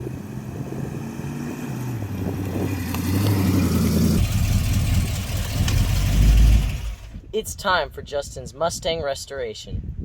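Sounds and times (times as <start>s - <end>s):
car engine running: 0.0s - 7.3s.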